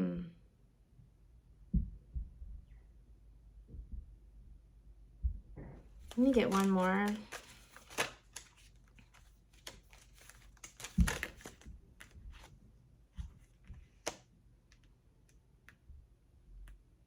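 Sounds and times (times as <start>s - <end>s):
cards being shuffled: 6.0s - 12.5s, 13.2s - 14.9s.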